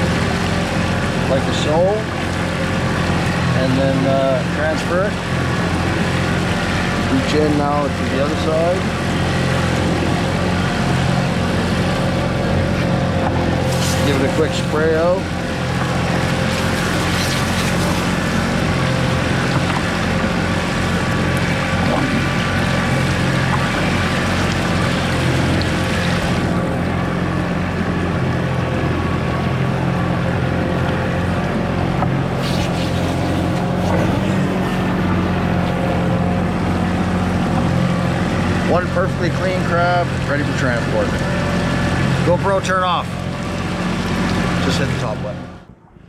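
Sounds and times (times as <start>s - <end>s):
hose spraying water: 0.0s - 26.8s, 32.2s - 36.3s
low motor hum: 0.0s - 46.0s.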